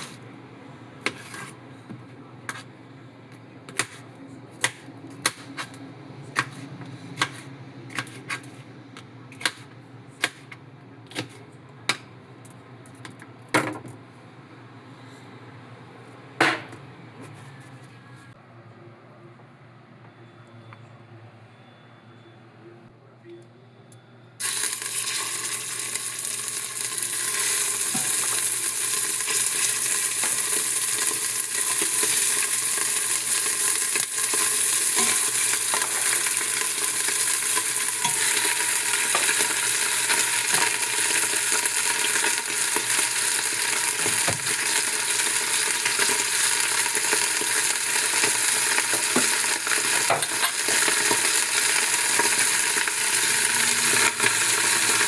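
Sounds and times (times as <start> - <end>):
food sizzling in oil: 24.4 - 55.0.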